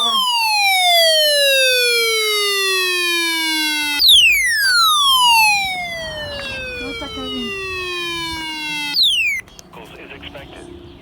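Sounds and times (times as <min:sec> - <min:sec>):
buzzy siren sliding down: 0:00.0 - 0:09.4.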